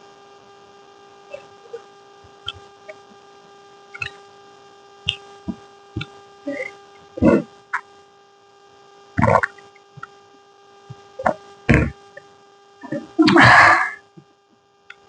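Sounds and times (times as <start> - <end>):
breathy mouth sound: 5.1 - 7.5, 9.2 - 9.8, 11.2 - 12.0, 12.8 - 14.0
mouth smacking and slurping: 6.5 - 7.5, 9.2 - 9.7.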